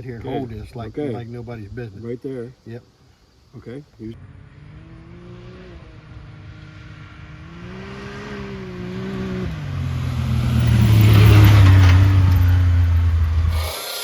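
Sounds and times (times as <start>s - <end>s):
vehicle engine running: 4.2s - 13.7s
loud low drone: 12.1s - 13.9s.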